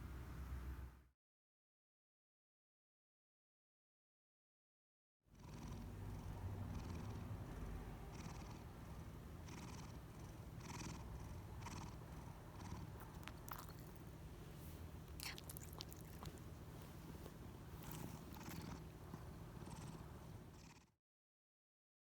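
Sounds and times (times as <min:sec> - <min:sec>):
cat purring: 0:05.4 - 0:20.9.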